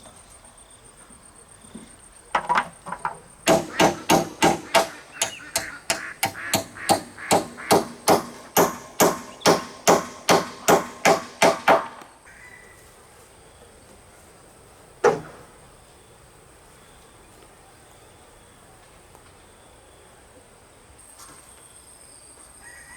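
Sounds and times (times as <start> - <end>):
hammer striking: 2.4 - 12.1.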